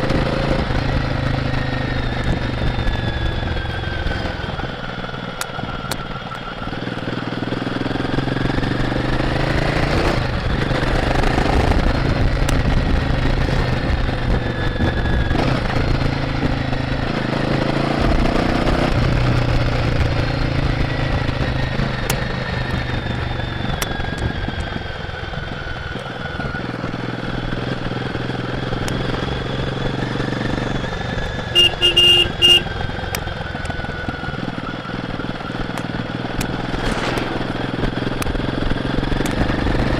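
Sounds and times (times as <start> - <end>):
motorcycle engine revving through gears: 0.0 - 39.9
horn short bursts: 31.5 - 32.8.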